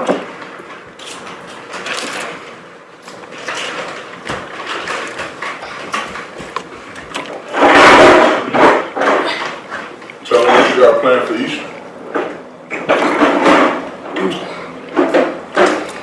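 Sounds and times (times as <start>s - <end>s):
chewing and handling shellfish: 1.0s - 2.4s, 5.0s - 7.6s.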